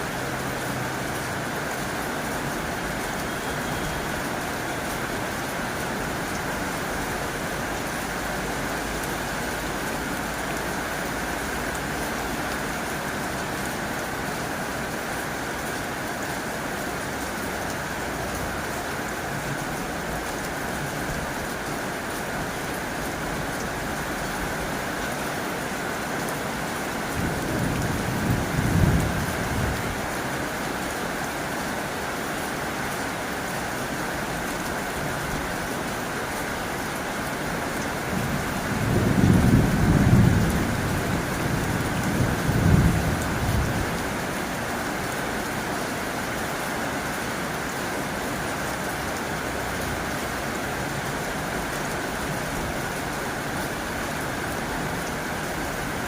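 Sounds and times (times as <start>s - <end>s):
heavy rain on a tin roof: 0.0s - 56.0s.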